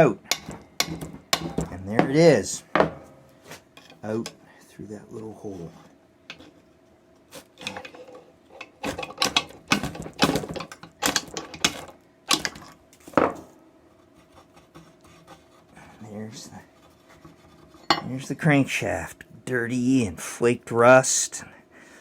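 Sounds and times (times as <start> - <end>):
metal clanking and rattling: 7.6 - 12.6.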